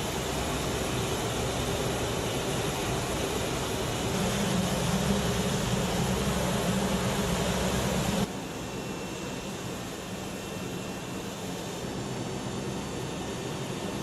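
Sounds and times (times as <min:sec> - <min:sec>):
aircraft engines droning: 0:00.0 - 0:14.0
low hum: 0:04.0 - 0:08.3.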